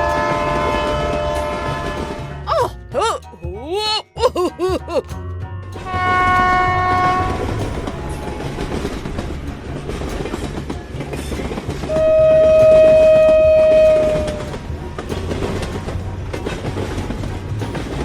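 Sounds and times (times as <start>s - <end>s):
train horn blast: 0.0s - 2.4s, 5.8s - 8.2s, 11.9s - 14.6s
train clickety-clack rumble: 0.0s - 3.5s, 4.2s - 18.0s.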